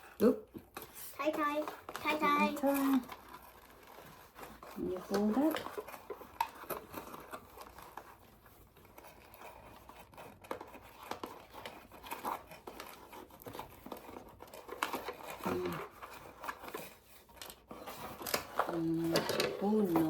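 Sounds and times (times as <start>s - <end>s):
toy packaging rustling: 0.0s - 20.0s.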